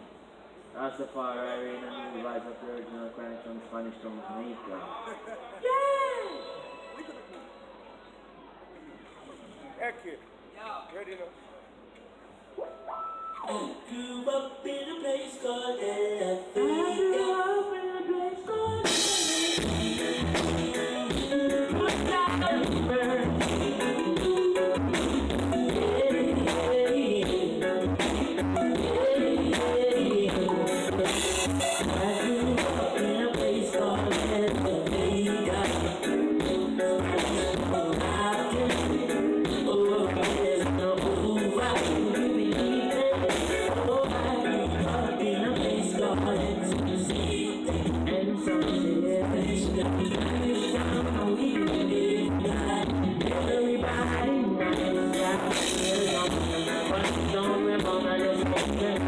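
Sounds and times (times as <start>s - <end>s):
reggae band playing: 12.6s - 13.9s, 18.8s - 59.0s
person singing: 13.4s - 59.0s
drums and bass beat: 18.8s - 45.0s, 45.6s - 59.0s.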